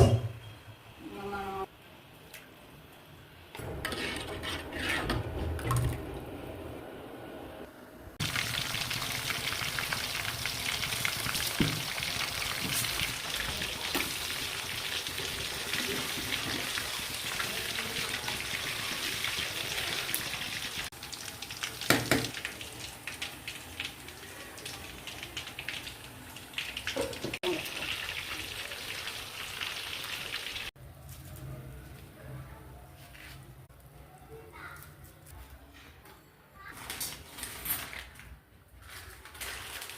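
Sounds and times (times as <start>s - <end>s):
food sizzling in hot oil: 8.2s - 30.7s.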